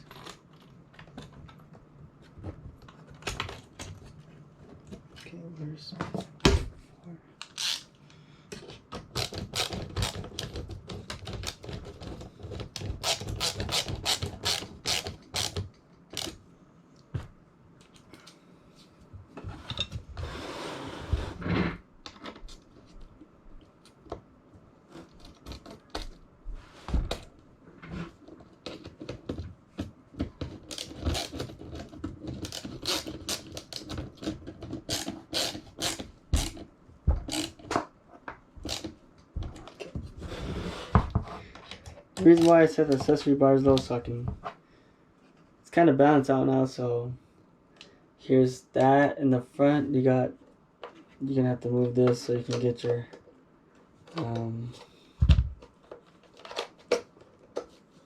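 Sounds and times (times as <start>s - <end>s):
plastic parts clicking and knocking: 8.5s - 16.4s, 28.2s - 40.1s, 54.0s - 57.8s.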